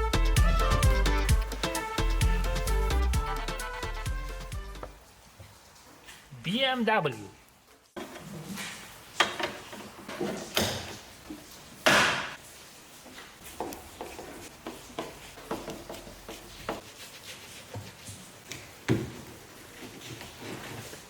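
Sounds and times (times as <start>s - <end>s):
objects knocking and clunking: 8.0s - 12.4s, 13.4s - 16.8s.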